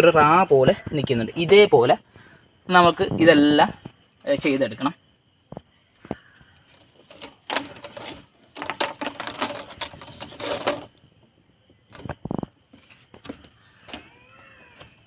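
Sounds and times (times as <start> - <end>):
plastic pipe fittings clicking: 5.5 - 11.0.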